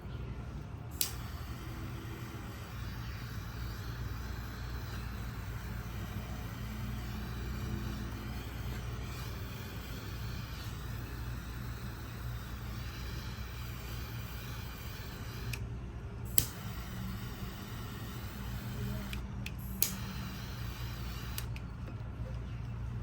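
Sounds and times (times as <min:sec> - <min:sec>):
steady low hum: 0:00.0 - 0:23.0
sharp clicks: 0:01.0 - 0:12.4, 0:16.3 - 0:22.0.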